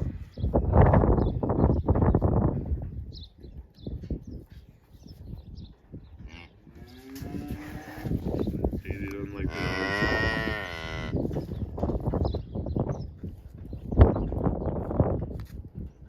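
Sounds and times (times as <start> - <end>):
cattle mooing: 6.3 - 8.2, 8.9 - 11.2.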